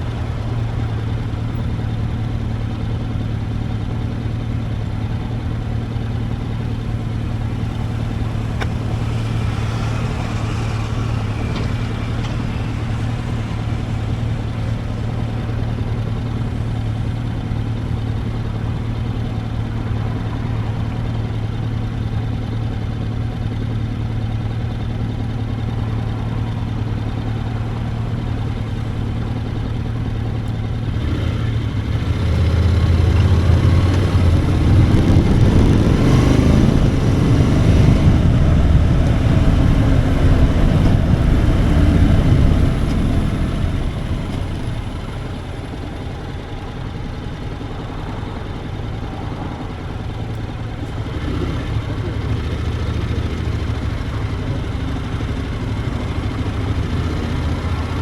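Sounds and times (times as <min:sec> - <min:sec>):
motorcycle engine running: 0:00.0 - 0:58.0
rushing noise: 0:32.6 - 0:45.9.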